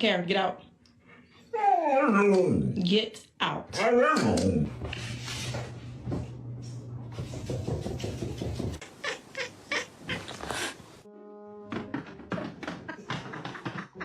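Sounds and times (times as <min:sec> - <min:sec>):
cat growling: 0:08.8 - 0:11.0.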